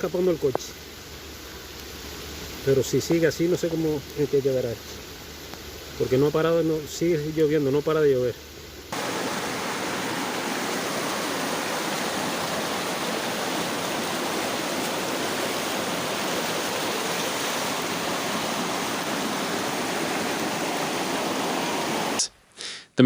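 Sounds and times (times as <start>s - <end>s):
rushing water: 8.9s - 22.3s.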